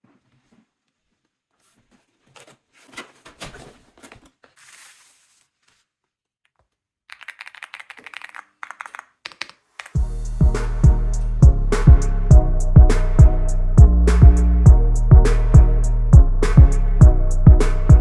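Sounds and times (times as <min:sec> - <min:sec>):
computer keyboard typing: 0:07.1 - 0:10.0
music with heavy drum beat: 0:10.0 - 0:18.0.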